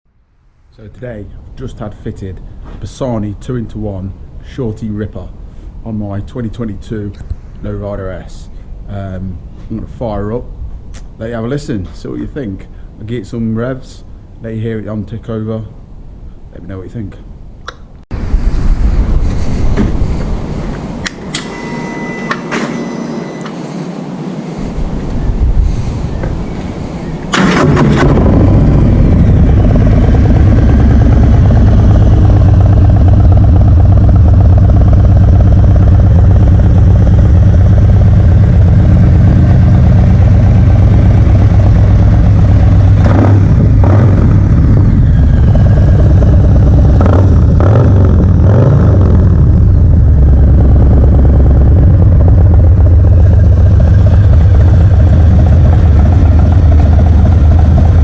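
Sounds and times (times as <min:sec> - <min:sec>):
motorcycle idling and revving: 0:24.7 - 0:58.0.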